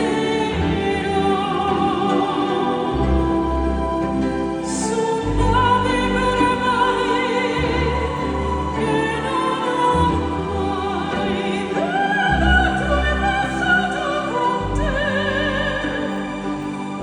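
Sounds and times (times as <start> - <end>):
operatic singing with vibrato: 0.0 - 17.0
orchestra playing: 0.0 - 17.0.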